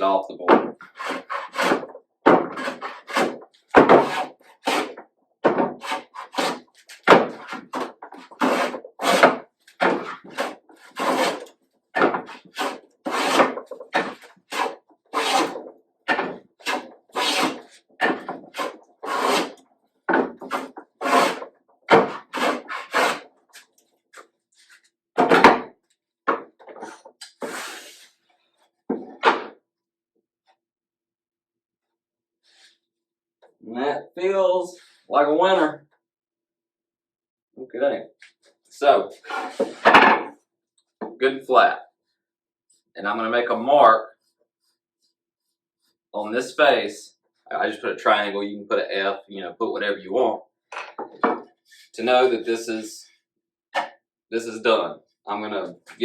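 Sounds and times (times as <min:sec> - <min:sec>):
hand plane shaving wood: 0:00.5 - 0:19.6, 0:20.4 - 0:23.7, 0:39.2 - 0:39.8.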